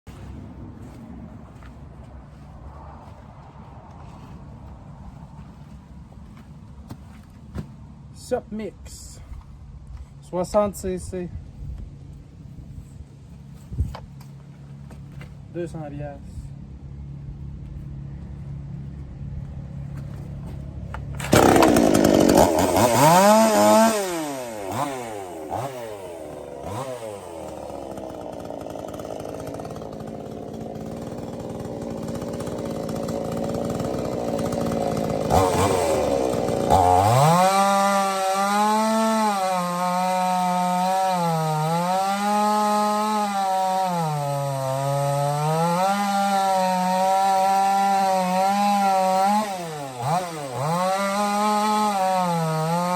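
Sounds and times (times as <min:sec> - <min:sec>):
chainsaw engine revving: 0:21.1 - 0:52.9.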